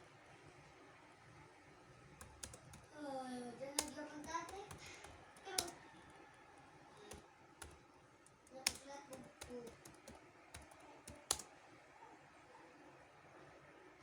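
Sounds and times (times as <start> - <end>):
computer keyboard typing: 2.2 - 11.5.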